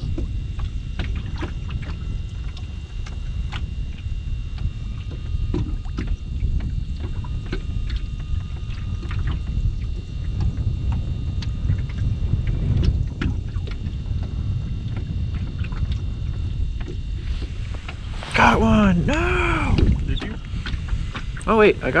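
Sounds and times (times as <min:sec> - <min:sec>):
faint high whine: 0:00.0 - 0:22.0
wind buffeting microphone: 0:00.0 - 0:22.0.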